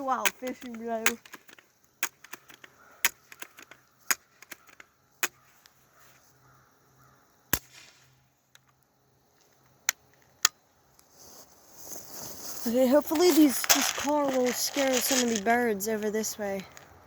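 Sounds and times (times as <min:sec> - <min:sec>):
bb gun cracks and clicks: 0:07.5 - 0:08.8.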